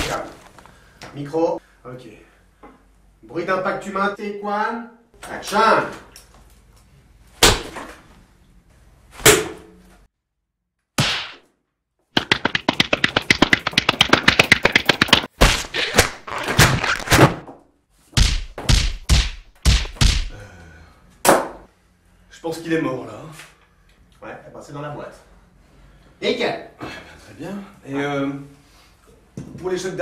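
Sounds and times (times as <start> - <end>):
thuds of blows: 12.2 - 17.5, 18.1 - 20.4.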